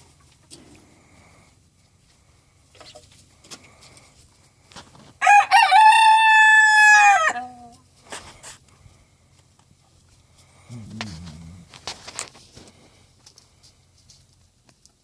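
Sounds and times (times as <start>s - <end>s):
rooster crowing: 5.2s - 7.6s.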